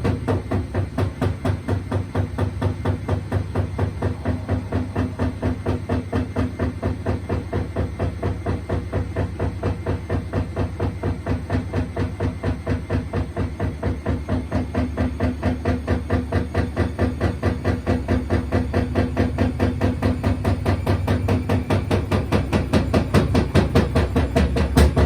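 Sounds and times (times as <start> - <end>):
motor hum: 0.0 - 16.8
washing machine drum knocking: 0.0 - 17.2, 19.4 - 25.0.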